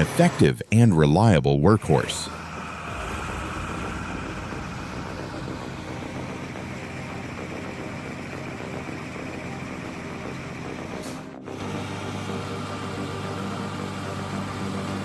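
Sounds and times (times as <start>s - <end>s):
truck diesel engine running: 1.8s - 15.0s.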